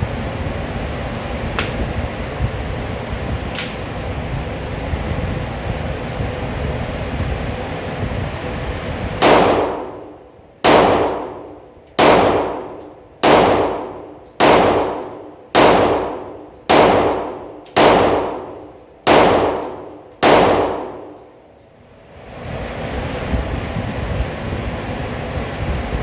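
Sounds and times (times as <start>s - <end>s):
pistol shots echoing: 10.6s - 11.4s, 12.0s - 21.0s.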